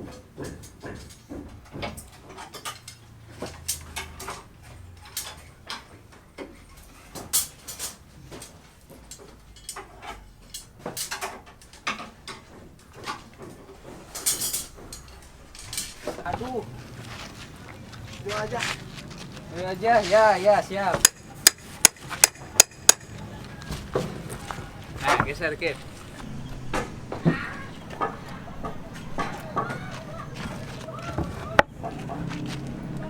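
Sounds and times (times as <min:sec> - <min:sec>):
hard objects clinking: 0:20.9 - 0:26.2.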